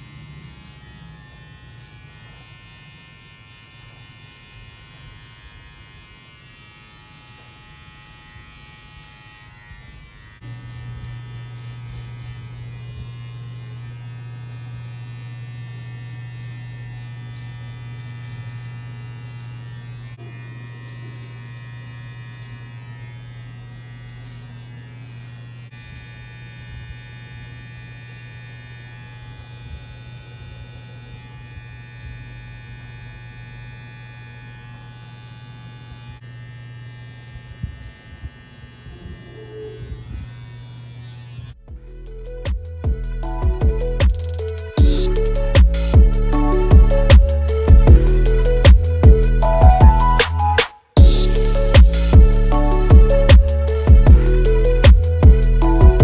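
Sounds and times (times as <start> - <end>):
electric hair clipper buzzing: 0.0 - 56.0
low hum: 41.6 - 56.0.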